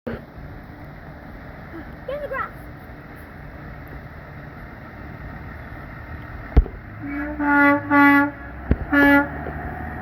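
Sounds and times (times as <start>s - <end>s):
passing traffic rumble: 0.1s - 10.0s
truck air horn blasts: 7.0s - 9.5s.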